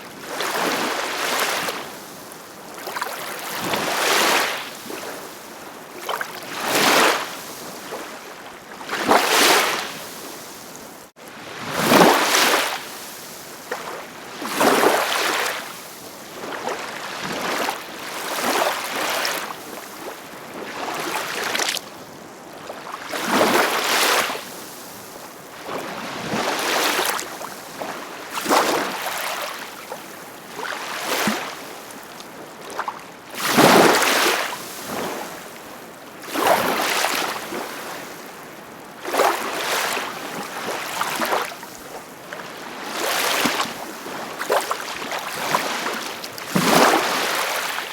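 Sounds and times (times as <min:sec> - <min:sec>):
ocean waves breaking: 0:39.0 - 0:47.9.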